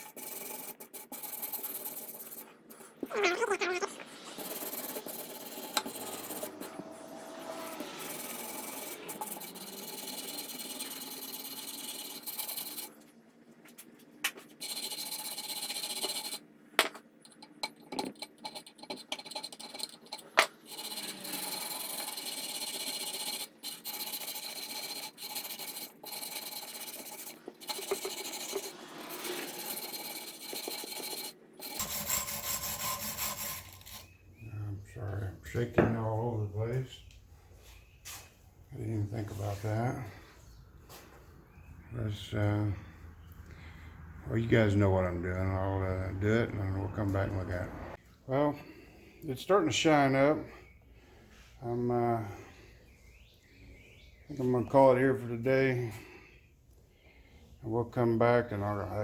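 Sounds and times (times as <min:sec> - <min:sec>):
wire brush scrubbing metal: 0:00.0 - 0:12.9, 0:18.3 - 0:34.2.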